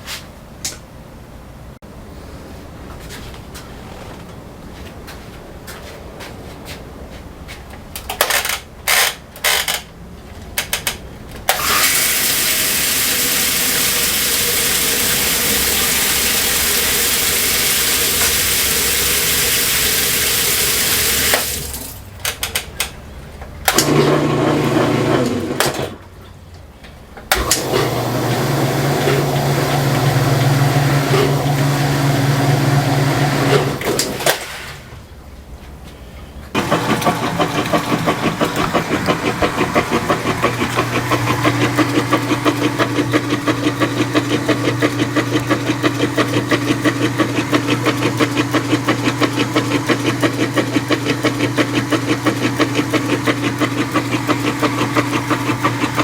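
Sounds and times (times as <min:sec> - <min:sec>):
washing machine motor hum: 0:11.5 - 0:22.3, 0:23.5 - 0:26.3, 0:27.2 - 0:35.5, 0:36.5 - 0:56.0
water rushing into tub: 0:11.6 - 0:22.0.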